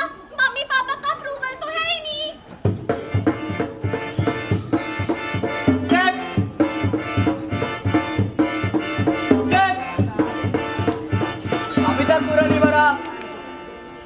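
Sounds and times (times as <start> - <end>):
music with quick drum beat: 2.6 - 13.2.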